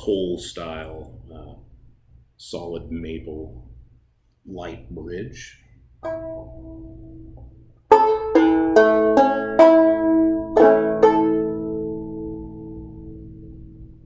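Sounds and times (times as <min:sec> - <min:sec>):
banjo plucked notes: 0:06.0 - 0:14.0.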